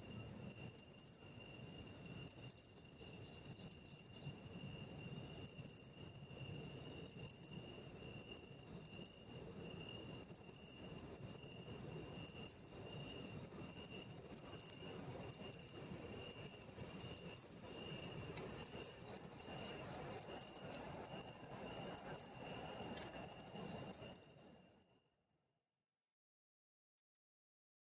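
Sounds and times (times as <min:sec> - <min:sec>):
cricket chirping: 0:00.0 - 0:25.4
faint steady high tone: 0:00.0 - 0:25.4.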